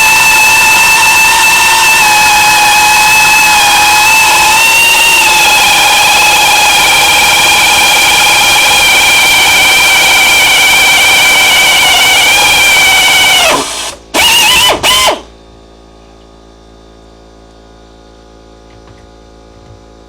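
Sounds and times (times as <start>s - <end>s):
drill whining: 0.0s - 15.3s
air compressor humming: 0.0s - 20.0s.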